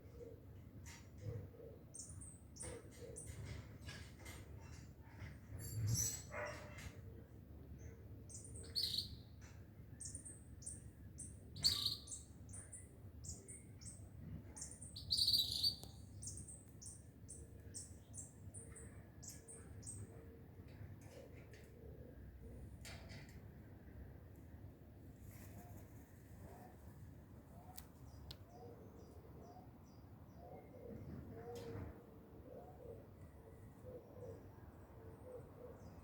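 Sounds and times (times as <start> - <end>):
birds chirping: 8.3 - 9.2, 10.0 - 14.0, 14.6 - 20.1.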